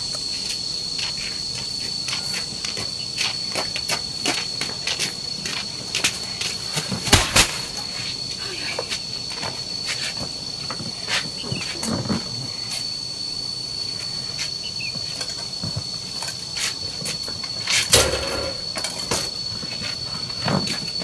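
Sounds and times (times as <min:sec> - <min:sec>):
sharp double knock: 0:18.0 - 0:18.8.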